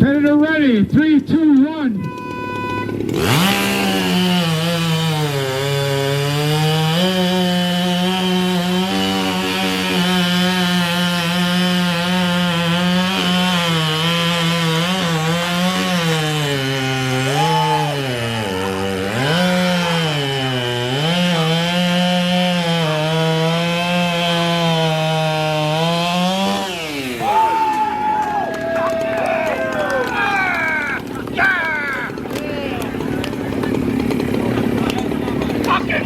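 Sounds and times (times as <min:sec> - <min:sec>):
chainsaw cutting through log: 0:01.3 - 0:36.0.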